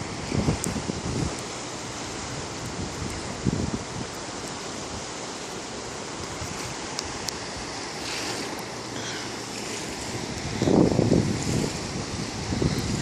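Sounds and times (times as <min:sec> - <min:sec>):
wind gust buffeting microphone: 0:00.0 - 0:04.2, 0:09.4 - 0:13.0
rushing wind: 0:00.0 - 0:13.0.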